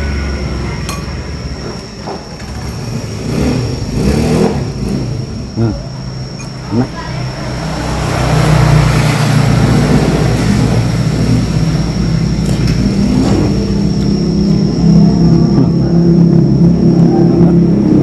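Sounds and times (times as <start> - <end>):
vehicle engine running: 0.0 - 18.0.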